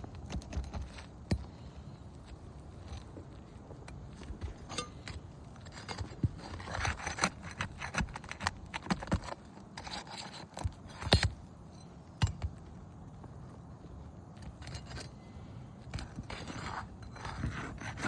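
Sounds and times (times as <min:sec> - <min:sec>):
hand tools scraping shingles: 0:04.2 - 0:11.4, 0:15.9 - 0:18.0.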